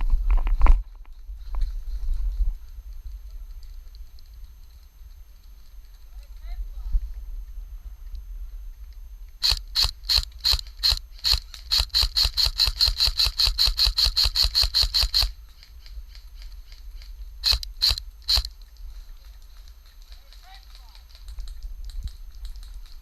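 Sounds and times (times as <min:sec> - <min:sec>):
airsoft gun shots: 0:09.4 - 0:15.3, 0:17.4 - 0:18.5.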